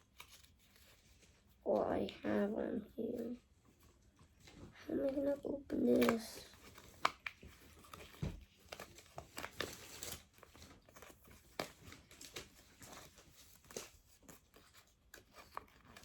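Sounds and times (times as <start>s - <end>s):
packaging crinkling and tearing: 4.4s - 16.0s.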